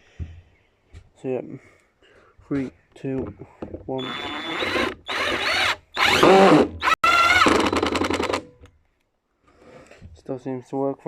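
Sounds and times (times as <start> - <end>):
impact driver boring wood: 4.0 - 8.5.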